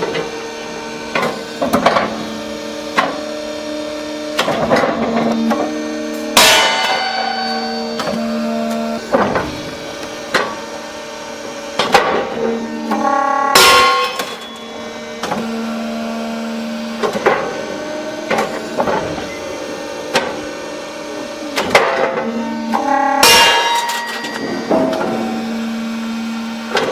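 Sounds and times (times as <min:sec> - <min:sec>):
machine hum: 0:00.0 - 0:26.9
metallic ringing: 0:06.4 - 0:08.3, 0:13.1 - 0:14.9, 0:22.7 - 0:25.5.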